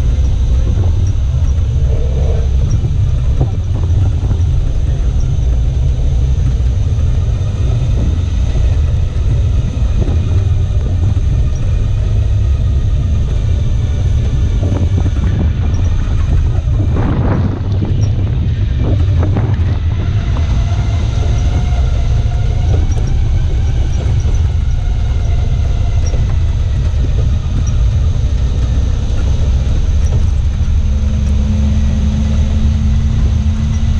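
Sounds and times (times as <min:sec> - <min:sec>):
off-road vehicle engine rumbling: 0:00.0 - 0:33.9.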